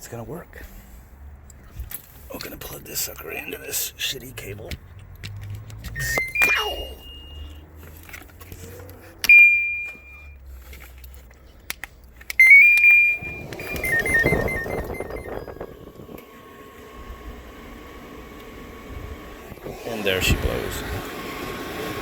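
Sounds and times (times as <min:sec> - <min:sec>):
control panel beeps: 0:05.9 - 0:07.6, 0:09.2 - 0:10.4, 0:12.4 - 0:15.8.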